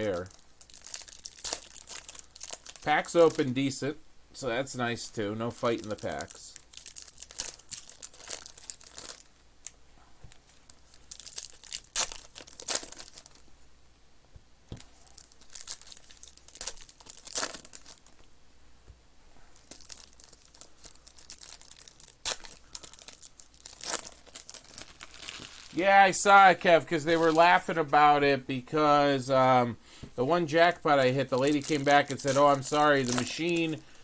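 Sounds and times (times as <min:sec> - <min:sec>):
card wrappers tearing and crinkling: 0:00.0 - 0:03.7, 0:05.1 - 0:09.8, 0:10.4 - 0:13.4, 0:14.9 - 0:18.2, 0:19.6 - 0:27.7, 0:30.6 - 0:34.0.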